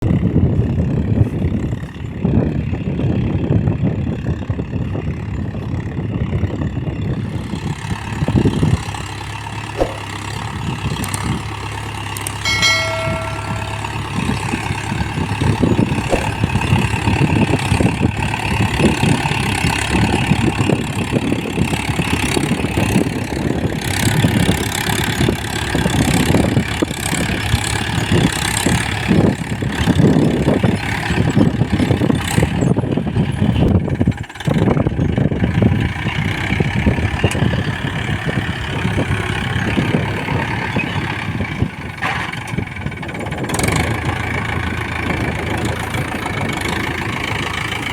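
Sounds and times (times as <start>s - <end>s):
tractor diesel engine running: 0.0s - 47.9s
ringing tone: 12.4s - 16.7s.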